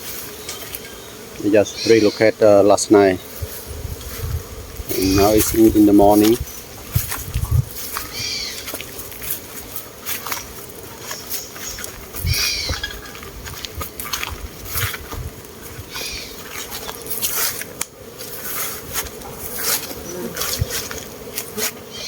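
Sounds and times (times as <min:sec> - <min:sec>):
bees buzzing: 0:00.0 - 0:22.0
bird calling: 0:00.4 - 0:02.4, 0:04.9 - 0:05.7, 0:08.0 - 0:08.8, 0:10.3 - 0:13.2, 0:15.8 - 0:17.1.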